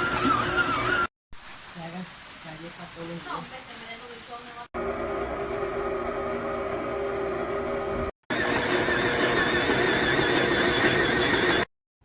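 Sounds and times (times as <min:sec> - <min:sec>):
stand mixer motor whining: 0:00.0 - 0:01.1, 0:04.8 - 0:11.7.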